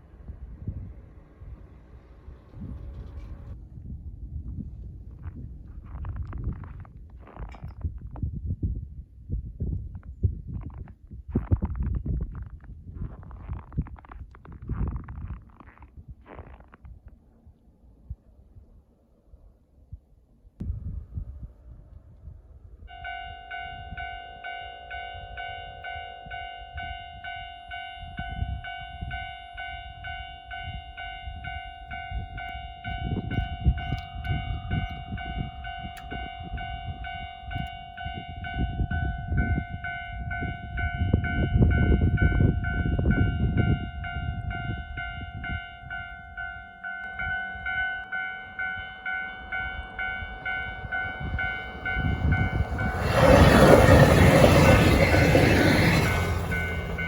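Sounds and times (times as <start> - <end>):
approaching train rush: 0.0 - 5.6, 35.1 - 57.0
low uneven rumble: 0.0 - 7.4, 48.5 - 57.0.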